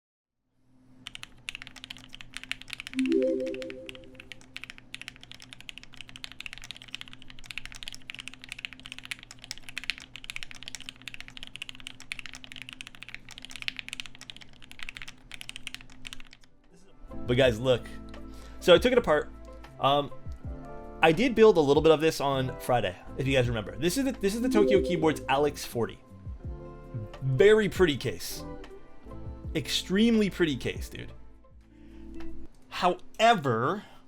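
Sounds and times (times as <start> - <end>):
mechanical keyboard typing: 1.0 - 16.5.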